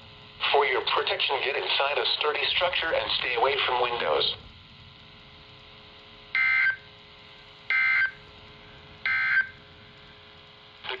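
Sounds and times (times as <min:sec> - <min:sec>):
warbling two-tone data bursts: 0:06.4 - 0:06.9, 0:07.7 - 0:08.2, 0:09.1 - 0:09.6.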